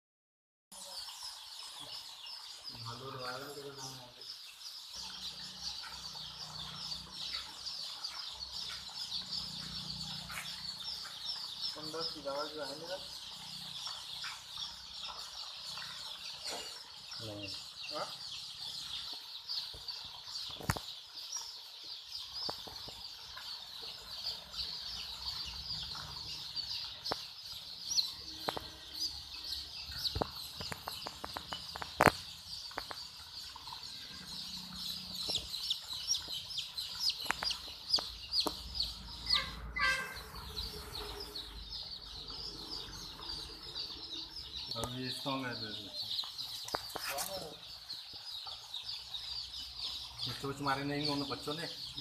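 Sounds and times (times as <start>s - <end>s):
chicks peeping: 0.7s - 52.0s
sharp taps and knocks: 26.9s - 27.4s, 29.8s - 33.9s, 35.2s - 38.9s.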